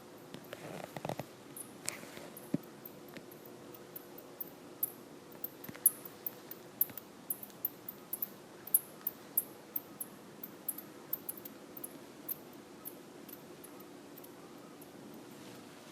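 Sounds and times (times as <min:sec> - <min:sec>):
high-pitched bat chirps: 0:02.8 - 0:15.0.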